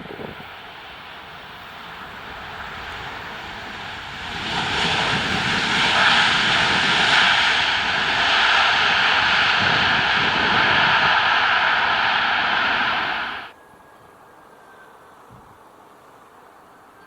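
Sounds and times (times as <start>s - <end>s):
jet engines rushing and whining: 0.0s - 13.6s.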